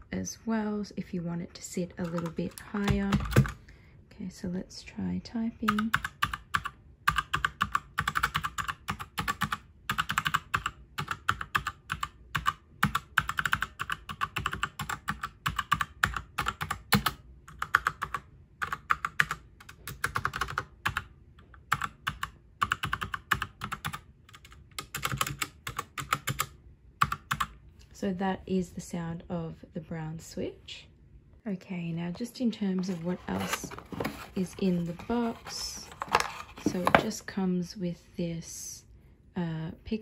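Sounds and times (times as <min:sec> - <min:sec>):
mechanical keyboard typing: 0:02.0 - 0:03.6, 0:05.7 - 0:27.5.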